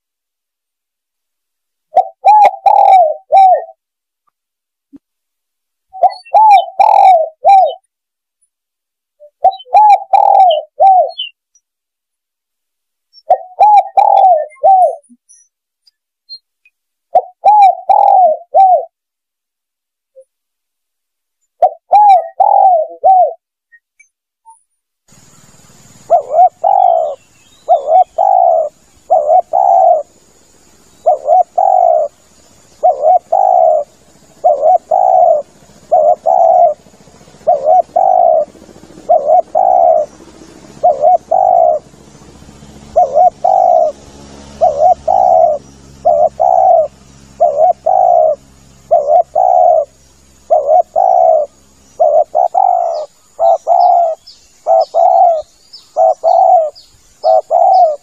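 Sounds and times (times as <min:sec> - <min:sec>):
dove cooing: 0:01.9 - 0:03.8, 0:05.9 - 0:07.9, 0:09.2 - 0:11.4, 0:13.2 - 0:15.2, 0:17.1 - 0:19.0, 0:21.6 - 0:23.4, 0:25.2 - 0:42.0, 0:42.8 - 0:58.0
faint background hiss: 0:25.0 - 0:58.0.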